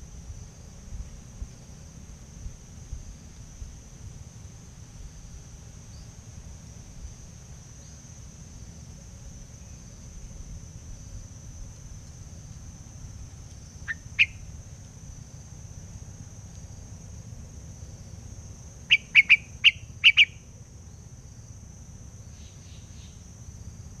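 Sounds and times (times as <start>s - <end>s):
high insect drone: 0.0s - 24.0s
songbird calling in sharp notes: 13.8s - 14.5s, 18.9s - 20.5s.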